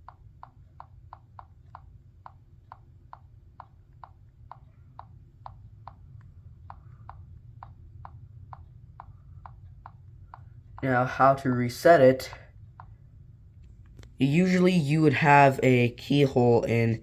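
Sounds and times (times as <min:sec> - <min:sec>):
light regular clicking: 0:00.0 - 0:10.9, 0:12.3 - 0:14.2
low hum: 0:00.0 - 0:17.0.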